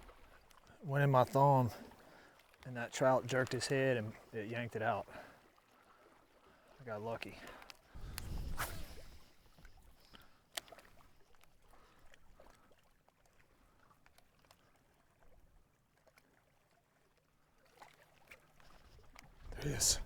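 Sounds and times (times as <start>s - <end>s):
faint small clicks: 7.4s - 12.2s.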